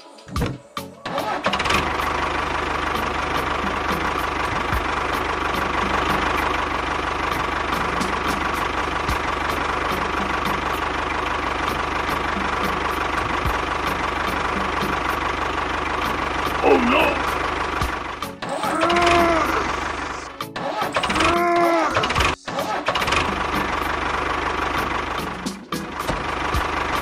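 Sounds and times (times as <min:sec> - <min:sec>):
motor running: 0:16.6 - 0:20.3.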